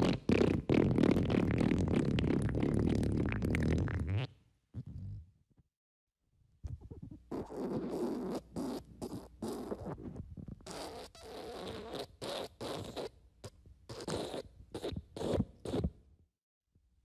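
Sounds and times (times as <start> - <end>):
fart sound effects: 0.0 - 5.2.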